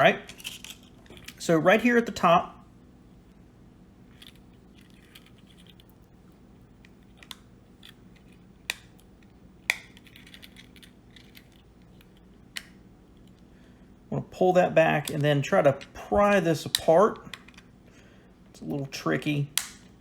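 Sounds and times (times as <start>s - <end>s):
key fob plastic clicks: 6.8s - 13.4s, 15.0s - 15.9s, 16.7s - 17.7s.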